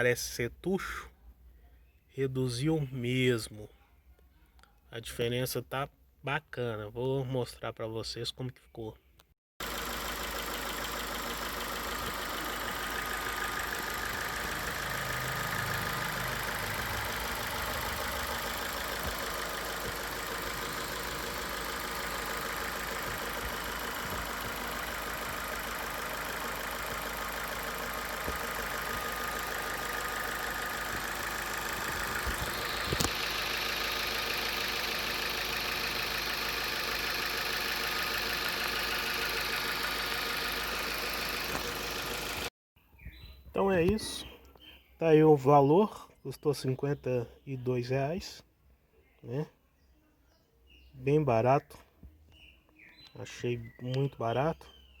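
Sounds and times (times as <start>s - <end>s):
car engine idling: 9.6s - 42.5s
engine knock: 9.6s - 42.5s
engine ticking: 9.6s - 42.5s.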